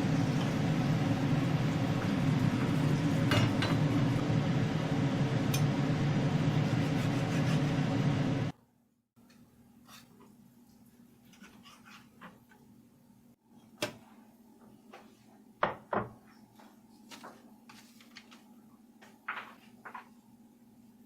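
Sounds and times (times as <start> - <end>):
steady low hum: 0.0 - 8.6.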